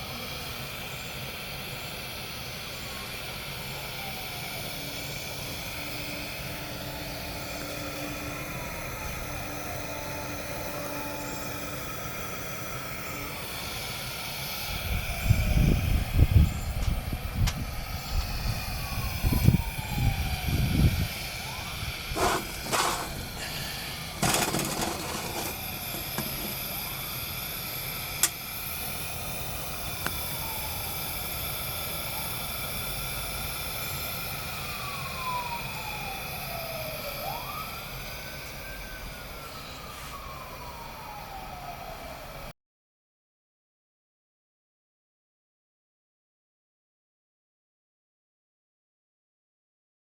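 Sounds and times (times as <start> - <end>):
pressure lantern hissing: 0.0 - 16.6, 17.6 - 40.4
siren wailing: 18.4 - 27.4, 29.6 - 31.3, 34.5 - 42.4.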